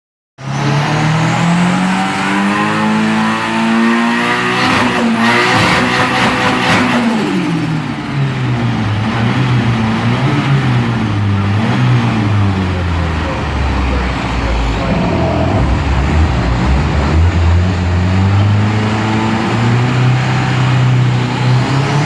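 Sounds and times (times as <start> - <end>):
car engine revving: 0.4 - 22.0
turbo fluttering chatter: 12.7 - 17.2.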